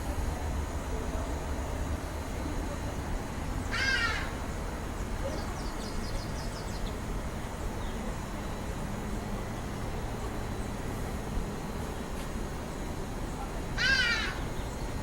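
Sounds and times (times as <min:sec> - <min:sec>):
bird harsh call: 0:03.7 - 0:04.4, 0:13.8 - 0:14.5.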